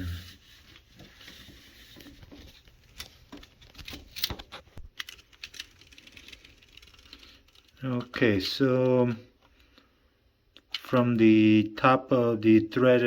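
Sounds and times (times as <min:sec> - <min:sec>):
plastic parts clicking and rustling: 0:01.9 - 0:09.8.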